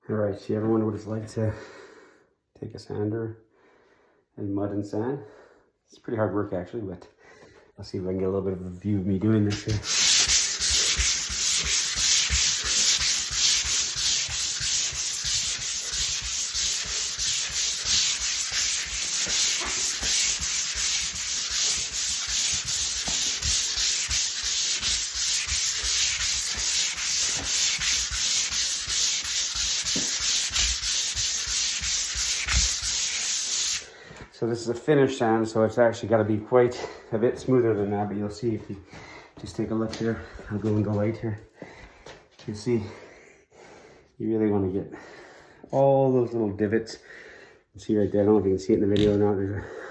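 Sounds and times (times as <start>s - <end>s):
sandpaper rasping on drywall: 9.5s - 33.9s.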